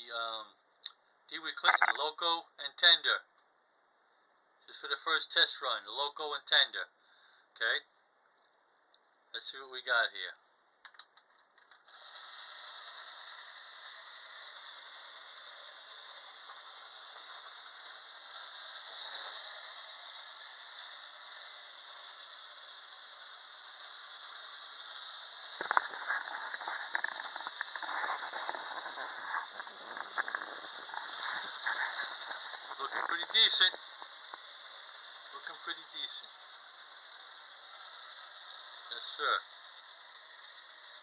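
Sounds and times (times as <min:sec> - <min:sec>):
model train motor whine: 0:11.7 - 0:41.0
wheels clicking on track: 0:12.0 - 0:41.0.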